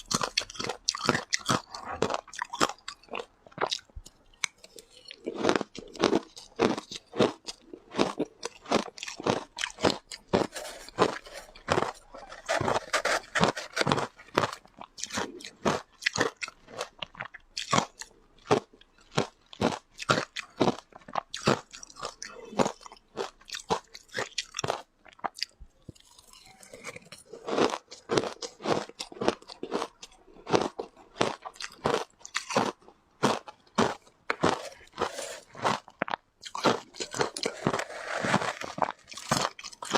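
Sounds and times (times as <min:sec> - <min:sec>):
shaved ice crunching: 0:36.6 - 0:39.9.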